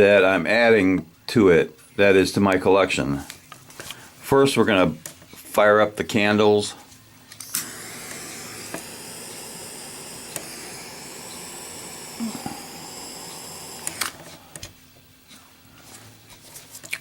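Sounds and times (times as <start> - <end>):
gas lighter flame hissing: 7.4 - 14.7.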